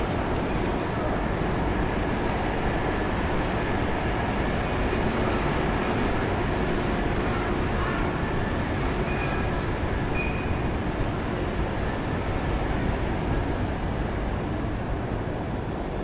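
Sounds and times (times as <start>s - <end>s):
train wheels rumbling on rail: 0.0s - 16.0s.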